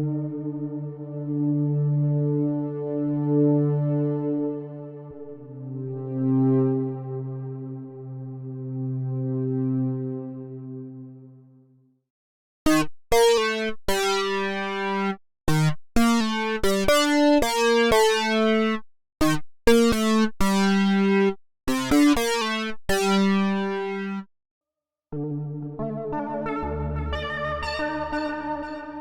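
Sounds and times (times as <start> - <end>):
held synthesizer chord: 0.0 - 11.6, 25.2 - 29.0
synthesizer plucked notes: 12.7 - 24.2, 25.2 - 29.0.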